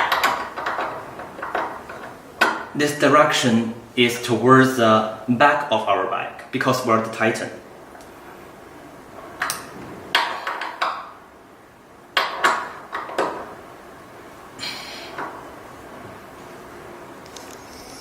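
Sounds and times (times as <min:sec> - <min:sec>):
wrench knocking on metal: 0:00.0 - 0:02.6.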